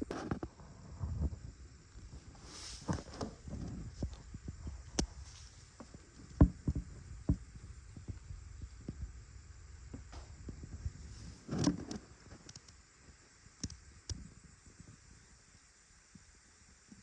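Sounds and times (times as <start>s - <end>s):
brief hiss: 2.3s - 3.4s.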